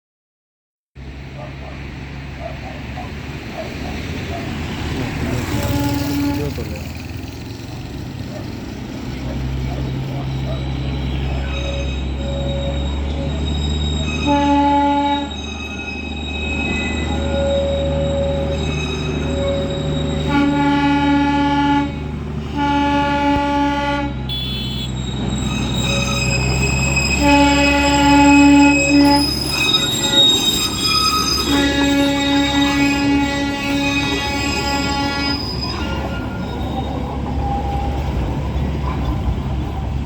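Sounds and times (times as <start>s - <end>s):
train rumbling: 1.0s - 40.0s
train horn blasts: 5.4s - 6.9s, 14.1s - 15.5s, 17.0s - 36.4s.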